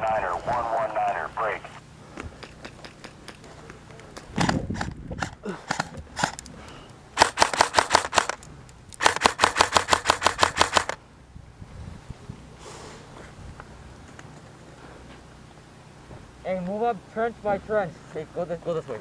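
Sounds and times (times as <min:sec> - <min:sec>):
scattered clicks: 0:00.8 - 0:11.0
airsoft gun firing bursts: 0:07.2 - 0:08.4, 0:09.0 - 0:11.0.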